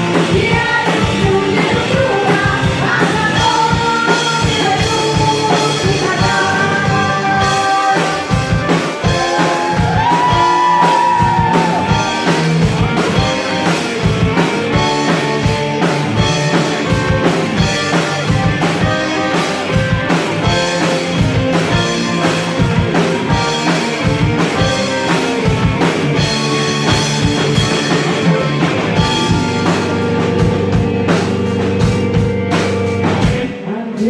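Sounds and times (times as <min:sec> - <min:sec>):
drum kit beat: 0:00.0 - 0:34.0
guitars: 0:00.0 - 0:34.0
women singing: 0:00.2 - 0:11.9.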